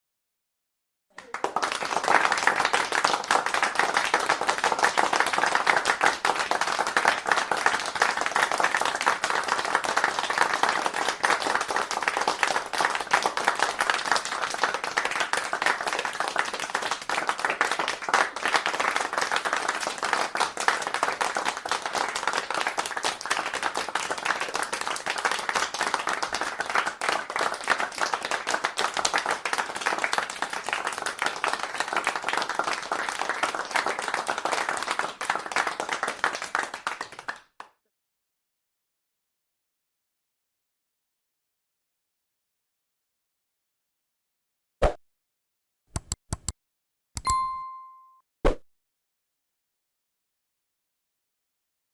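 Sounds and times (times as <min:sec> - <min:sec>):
crowd clapping: 0:01.1 - 0:37.8.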